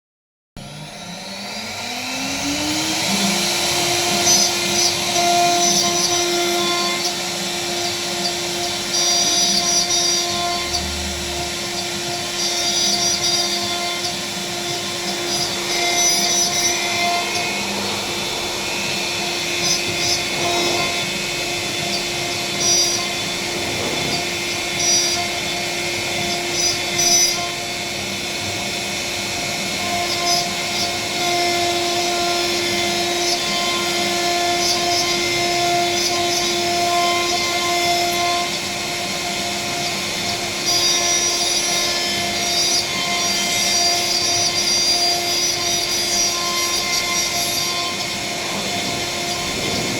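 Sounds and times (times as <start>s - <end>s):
bit cutting noise: 0.6s - 27.7s
router spindle whining: 0.6s - 49.9s.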